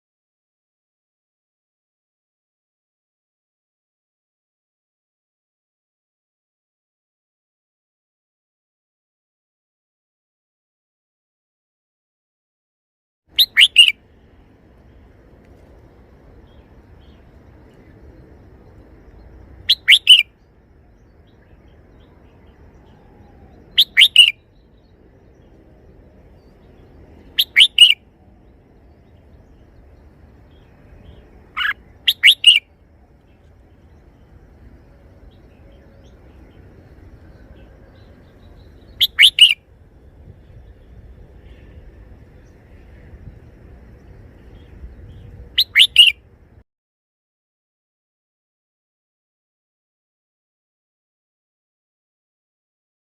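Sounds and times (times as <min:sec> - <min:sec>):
bird singing short phrase: 0:13.4 - 0:14.0, 0:19.6 - 0:20.3, 0:21.0 - 0:25.5, 0:26.4 - 0:28.0, 0:30.5 - 0:32.6, 0:35.2 - 0:39.6, 0:44.4 - 0:46.2.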